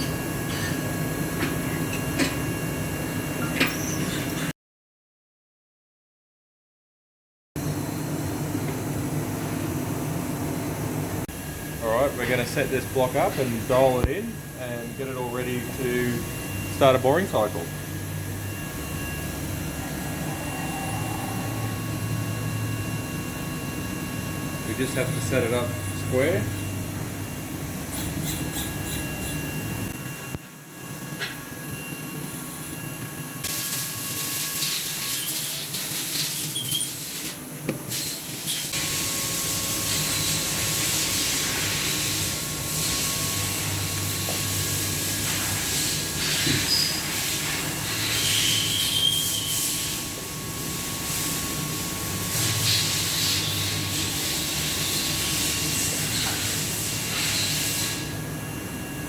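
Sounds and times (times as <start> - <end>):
low machine hum: 7.6 - 33.7
short squeaks: 27.9 - 29.7, 48.2 - 49.7.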